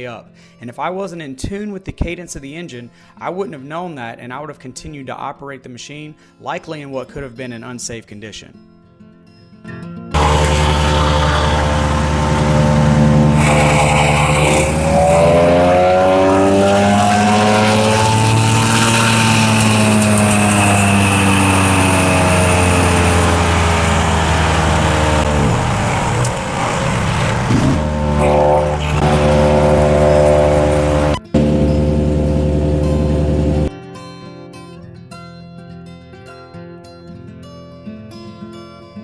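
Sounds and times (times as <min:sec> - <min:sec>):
wood chipper engine revving: 0:10.2 - 0:33.7.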